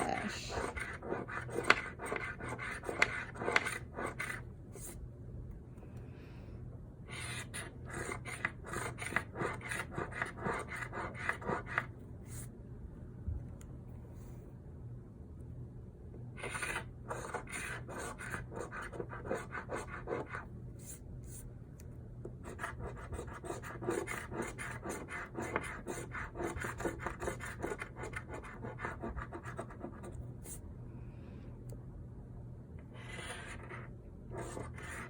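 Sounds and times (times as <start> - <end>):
steady low hum: 0.0 - 35.0
scratch card being scratched: 0.5 - 4.4.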